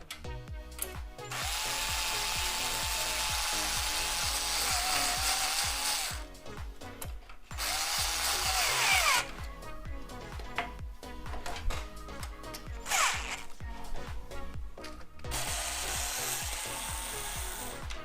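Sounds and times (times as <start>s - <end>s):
electric screwdriver whine: 1.2s - 6.2s, 7.6s - 9.3s, 12.8s - 13.5s, 15.3s - 17.9s.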